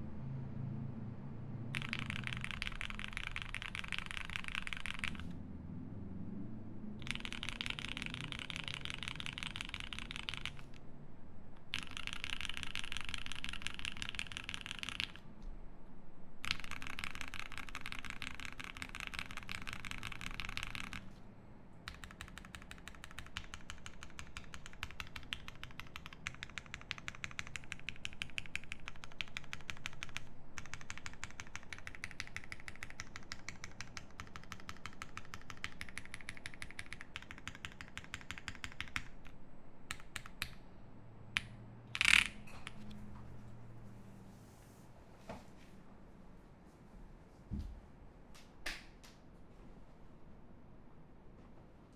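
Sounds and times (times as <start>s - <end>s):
fast typing on mechanical keyboard: 1.7s - 5.3s, 7.0s - 10.8s, 11.6s - 15.2s, 16.4s - 21.2s, 21.9s - 40.6s, 41.4s - 42.9s.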